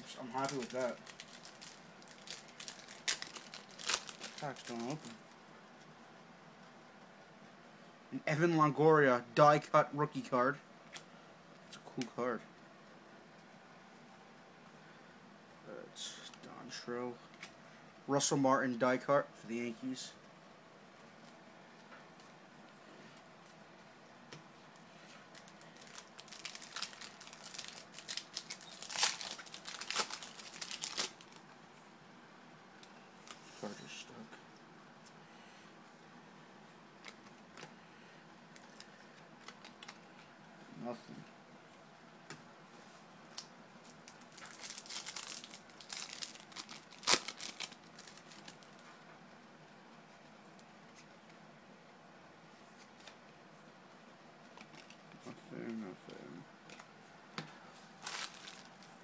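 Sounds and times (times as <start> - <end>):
wrapper crinkling and tearing: 0.0 - 5.2, 25.3 - 31.5, 43.3 - 48.8, 58.0 - 59.0.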